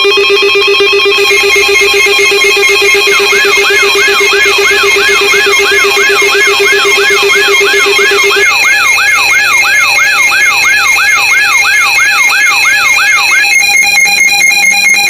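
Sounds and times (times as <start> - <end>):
low pulsing tone: 0.0 - 12.0
fast high warble: 0.0 - 14.6
electronic siren sweeping: 0.0 - 15.0
high alarm tones: 0.0 - 15.0.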